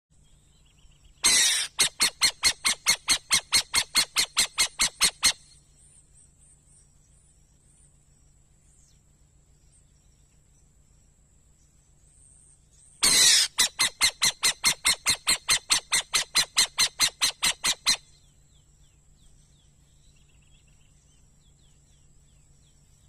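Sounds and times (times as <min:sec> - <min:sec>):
owl screeching: 0:01.2 - 0:05.4, 0:13.0 - 0:18.0.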